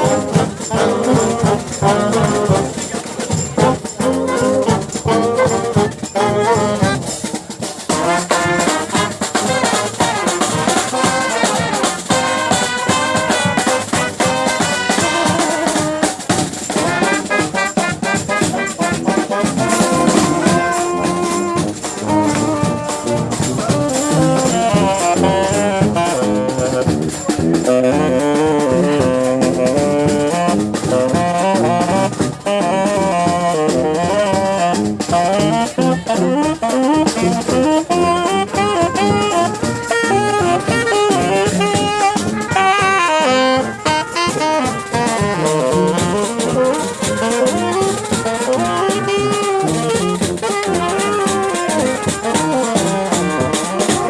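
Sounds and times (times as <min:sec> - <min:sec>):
brass band playing jazz: 0:00.0 - 0:54.0
steady drum beat: 0:00.0 - 0:54.0.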